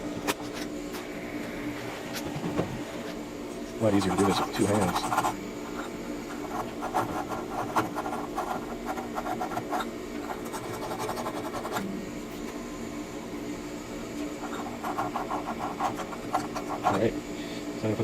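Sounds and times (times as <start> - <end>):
steady low hum: 0.0 - 18.0
scraping of sensor rod cleaning: 3.8 - 11.8, 14.4 - 17.1.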